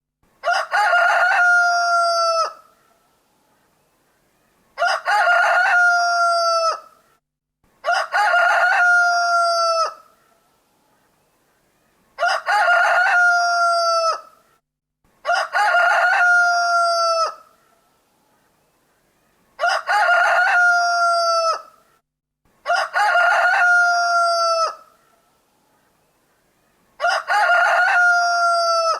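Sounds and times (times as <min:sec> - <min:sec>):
rooster crowing: 0:00.4 - 0:02.7, 0:04.8 - 0:06.9, 0:07.8 - 0:10.1, 0:12.2 - 0:14.3, 0:15.2 - 0:17.5, 0:19.6 - 0:21.7, 0:22.6 - 0:24.9, 0:27.0 - 0:28.9.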